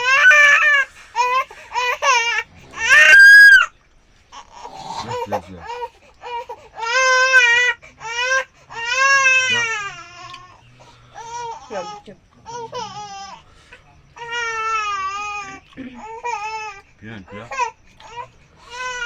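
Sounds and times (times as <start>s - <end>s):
young child crying and wailing: 0.0s - 3.7s
child shrieking: 2.7s - 3.7s.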